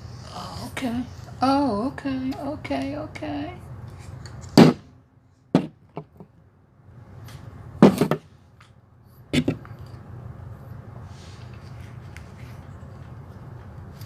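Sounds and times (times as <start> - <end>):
tripod parts knocking and clattering: 5.6 - 6.3, 7.8 - 9.9.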